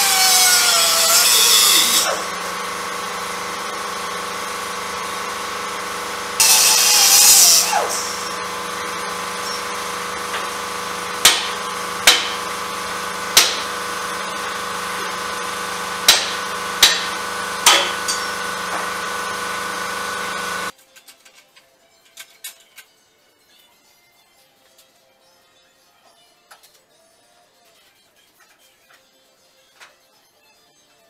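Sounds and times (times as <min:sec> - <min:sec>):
steady machine hum: 0:00.0 - 0:20.7
sharp metal knocks: 0:09.0 - 0:12.7, 0:13.3 - 0:14.2, 0:16.0 - 0:19.0.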